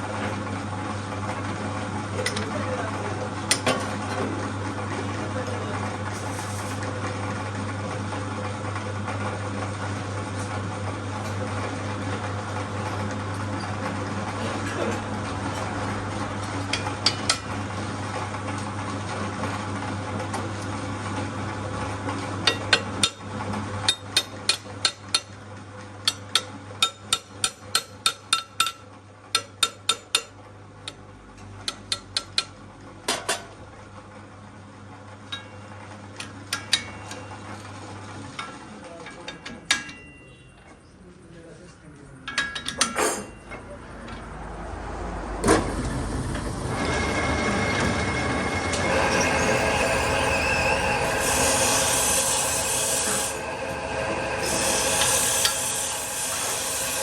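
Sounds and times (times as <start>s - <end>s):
hammer striking steel: 26.1s - 28.8s, 48.8s - 57.0s
machine hum: 45.7s - 57.0s.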